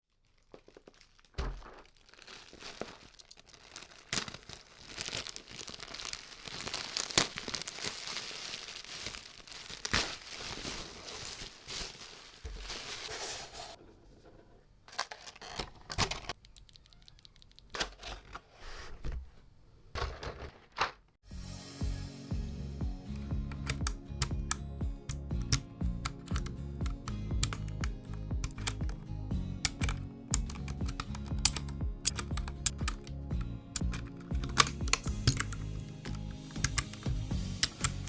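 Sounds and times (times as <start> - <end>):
plastic packaging crinkling and tearing: 0.1 - 13.7.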